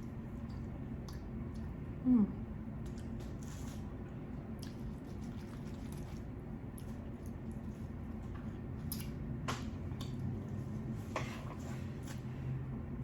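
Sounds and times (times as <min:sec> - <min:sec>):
wet chewing and mouth sounds: 0:00.0 - 0:02.0, 0:02.7 - 0:10.7.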